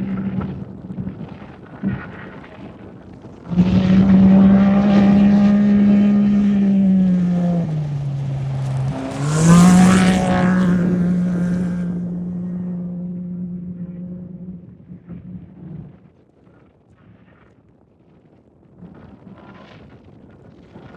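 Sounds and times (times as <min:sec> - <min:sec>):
race vehicle engine revving: 0:03.5 - 0:15.7.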